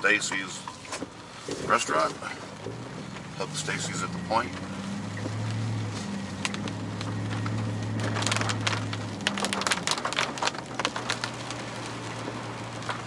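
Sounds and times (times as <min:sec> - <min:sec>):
car engine humming: 0:00.0 - 0:13.0
rain: 0:00.0 - 0:13.0
sharp irregular taps and crackles: 0:04.5 - 0:13.0.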